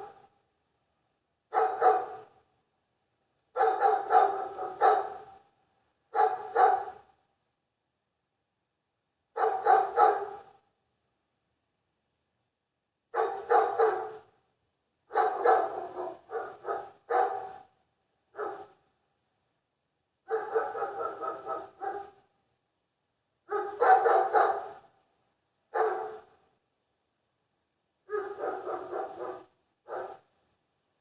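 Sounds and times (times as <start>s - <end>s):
dog barking: 1.5s - 2.4s, 3.5s - 5.5s, 6.1s - 7.1s, 9.4s - 10.6s, 13.1s - 14.3s, 15.1s - 18.8s, 20.3s - 22.3s, 23.5s - 24.9s, 25.7s - 26.4s, 28.1s - 30.3s.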